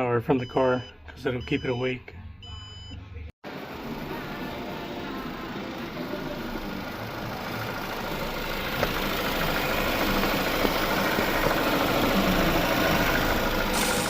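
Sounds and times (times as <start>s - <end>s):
car engine idling: 3.5s - 14.0s.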